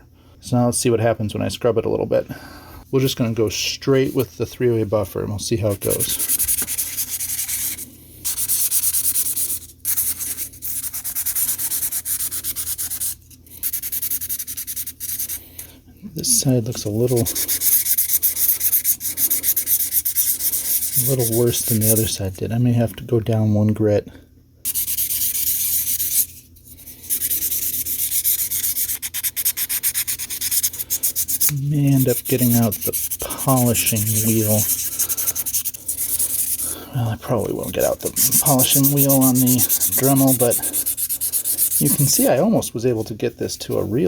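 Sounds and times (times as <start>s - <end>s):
buffer block scrubbing metal: 27.1s - 43.1s.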